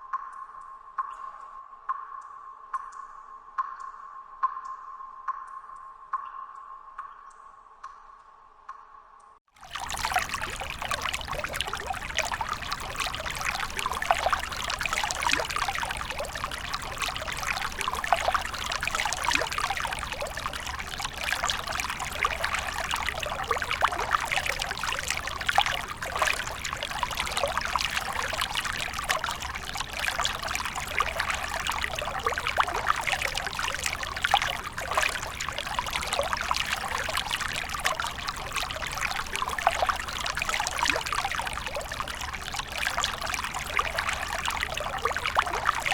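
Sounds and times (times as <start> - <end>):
stream babbling: 9.6 - 45.9.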